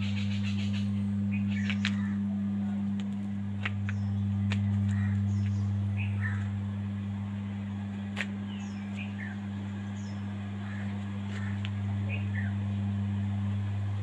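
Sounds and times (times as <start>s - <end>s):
bird chirps: 0.0s - 2.2s, 5.0s - 6.5s
steady low hum: 0.0s - 14.0s.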